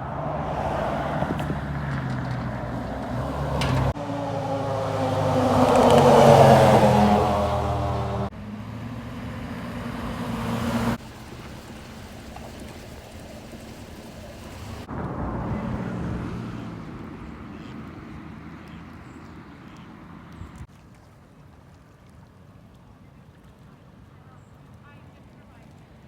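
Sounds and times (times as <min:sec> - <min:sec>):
vehicle engine hum: 0:00.0 - 0:20.7
vehicle passing: 0:00.0 - 0:20.7.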